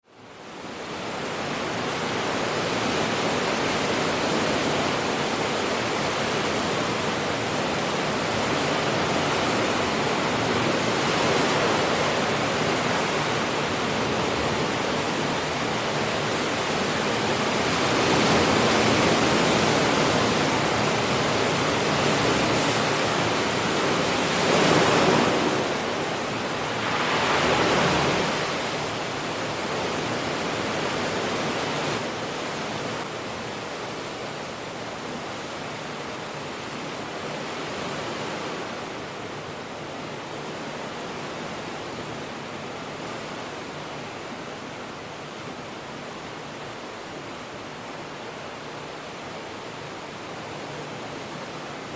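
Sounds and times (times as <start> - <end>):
rushing water: 0.0 - 51.9.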